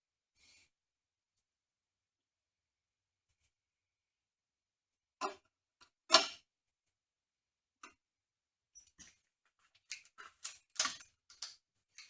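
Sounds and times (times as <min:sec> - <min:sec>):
metal tools clicking and knocking: 0:09.9 - 0:11.6.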